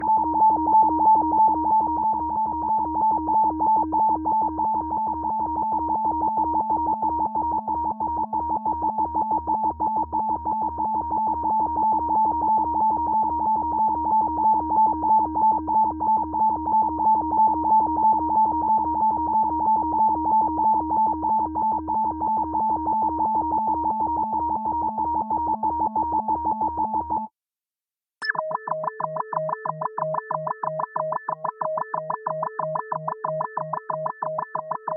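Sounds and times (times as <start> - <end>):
pulsing synthesized beep: 28.2 - 34.9.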